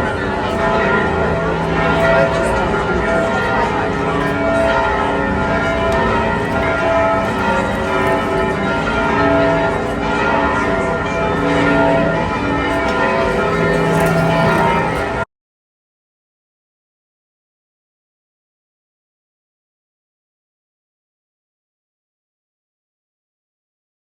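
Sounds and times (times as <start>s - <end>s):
church bells ringing: 0.0s - 15.2s.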